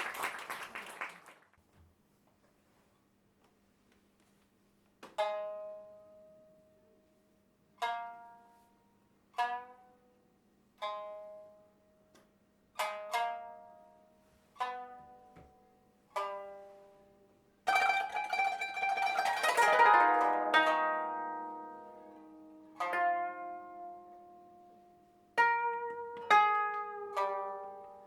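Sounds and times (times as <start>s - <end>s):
plucked string instrument: 5.0s - 7.0s, 7.7s - 28.0s.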